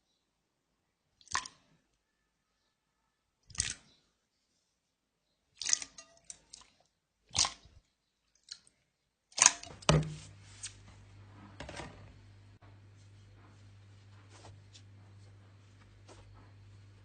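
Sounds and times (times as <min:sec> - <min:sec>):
low steady hum: 0:09.5 - 0:17.0.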